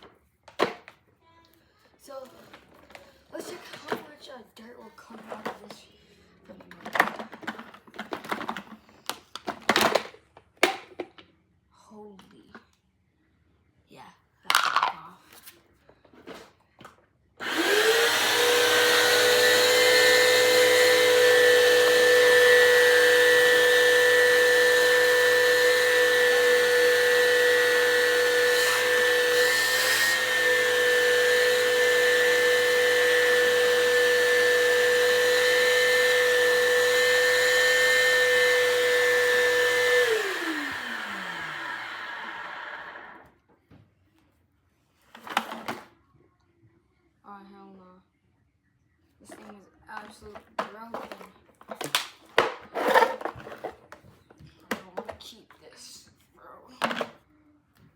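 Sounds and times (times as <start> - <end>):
vacuum cleaner motor whining: 17.4 - 43.3, 50.6 - 54.0.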